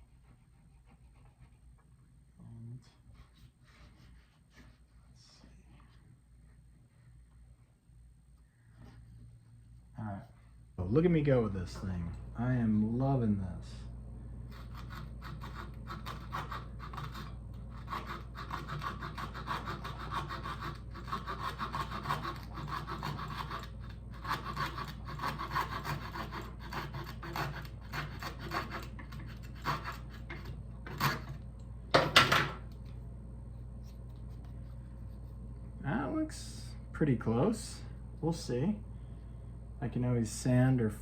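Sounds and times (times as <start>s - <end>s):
hand saw cutting wood: 14.5s - 31.4s.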